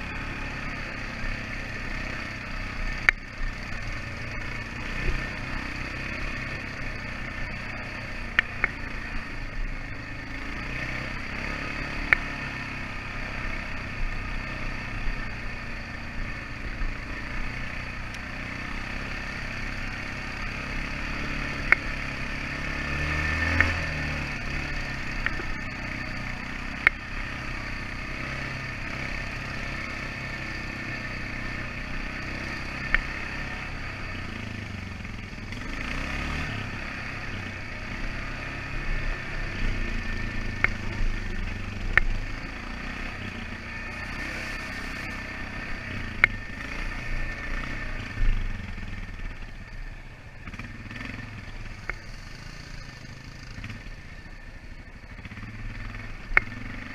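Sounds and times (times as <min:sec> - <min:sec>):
atv engine running: 0:00.0 - 0:56.9.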